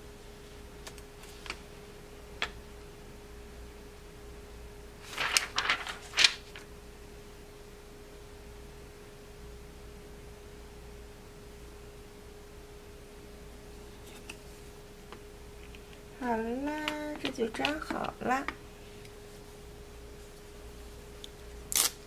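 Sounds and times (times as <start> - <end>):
plastic film crinkling and tapping: 16.7 - 18.6.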